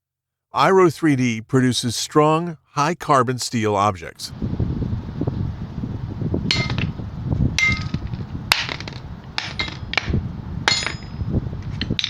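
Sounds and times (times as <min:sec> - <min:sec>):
steel parts clinking: 0:06.5 - 0:07.0, 0:07.6 - 0:12.0.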